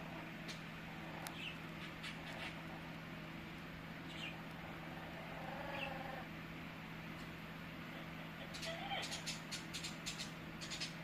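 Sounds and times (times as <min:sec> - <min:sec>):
steady low hum: 0:00.0 - 0:11.0
parrot squeaks and clicks: 0:08.5 - 0:11.0.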